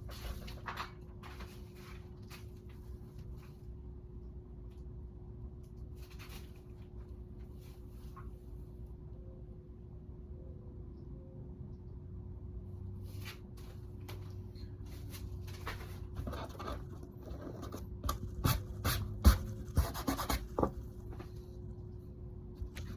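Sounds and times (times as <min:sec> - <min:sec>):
steady hum: 0:00.0 - 0:22.9
scratching and rubbing: 0:15.0 - 0:21.4.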